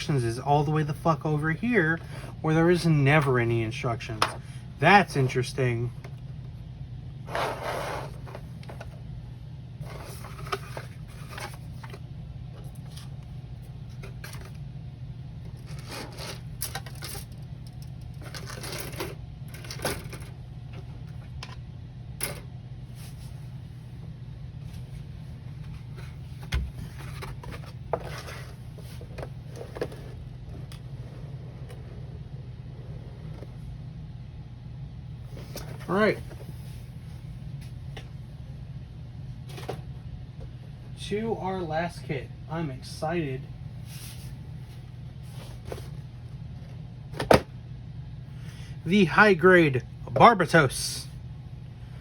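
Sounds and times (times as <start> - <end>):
steady low hum: 0.0 - 52.0.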